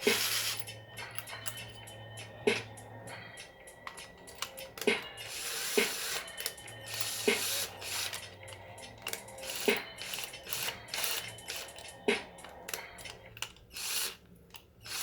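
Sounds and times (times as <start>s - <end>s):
drill ratcheting clicks: 3.9s - 8.3s, 9.0s - 11.9s, 12.6s - 15.0s.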